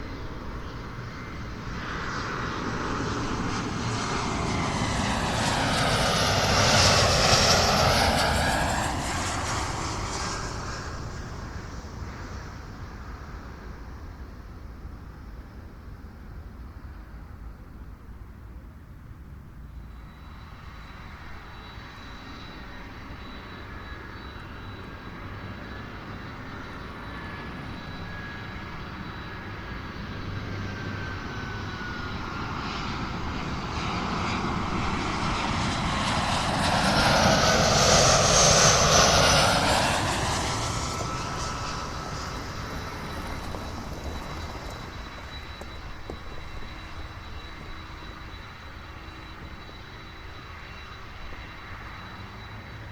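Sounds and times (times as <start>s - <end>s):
airliner engine noise: 0.0s - 52.9s
thin whine gliding down: 20.4s - 52.9s.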